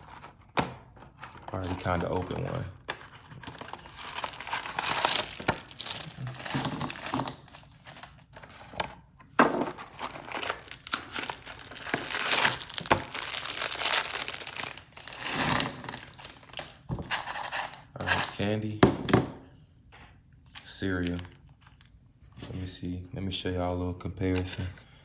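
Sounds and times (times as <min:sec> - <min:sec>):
plastic candy bag crinkling: 0:00.0 - 0:08.6, 0:09.8 - 0:18.4.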